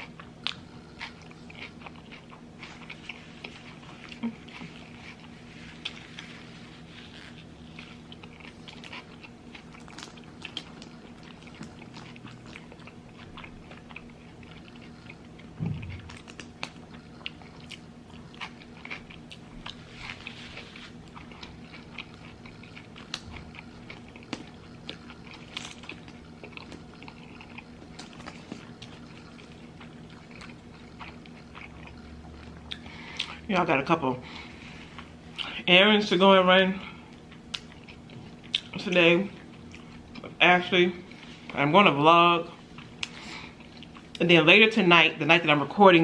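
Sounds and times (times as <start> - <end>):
low hum: 0.0 - 35.5
person chewing food: 0.0 - 35.7, 36.8 - 41.7, 42.4 - 44.2.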